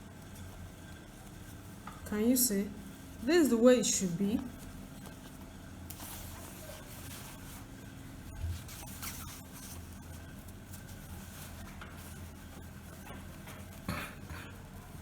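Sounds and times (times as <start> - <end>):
steady low hum: 0.0 - 15.0
fabric rustling: 0.2 - 15.0.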